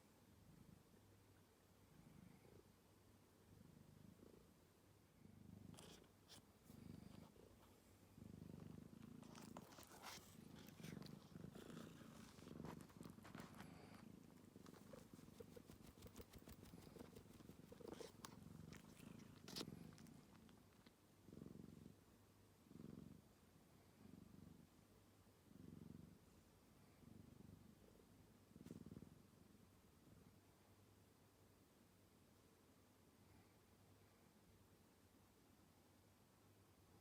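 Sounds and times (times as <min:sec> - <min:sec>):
cat purring: 0:00.2 - 0:01.2, 0:01.8 - 0:02.8, 0:03.4 - 0:30.6
soft clicks and rustles: 0:08.9 - 0:21.0.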